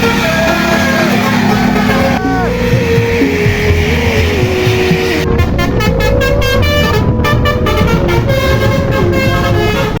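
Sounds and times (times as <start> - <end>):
musical bus horn melody: 0.0 - 10.0.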